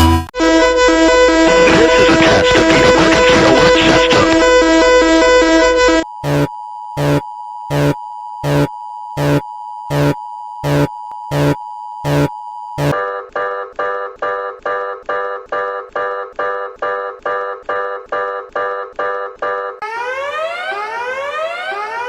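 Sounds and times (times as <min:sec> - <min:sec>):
electronic alert tone pulsing: 0:00.0 - 0:13.0
fast repeating alert tone: 0:01.1 - 0:13.0.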